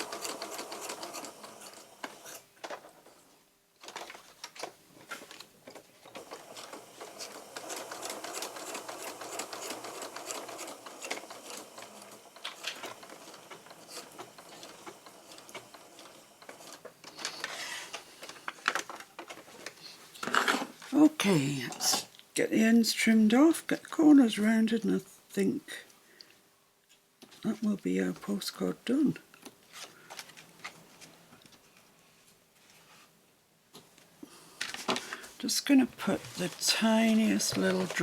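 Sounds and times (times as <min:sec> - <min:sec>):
sewing machine stitching: 0:00.0 - 0:02.5, 0:06.0 - 0:17.7.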